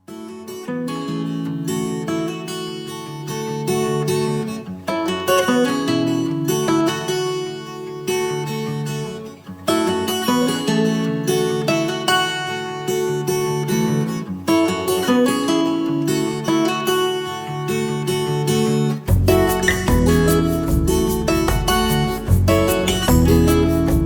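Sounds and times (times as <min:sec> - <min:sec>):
acoustic guitar strumming chords: 0:00.1 - 0:24.0.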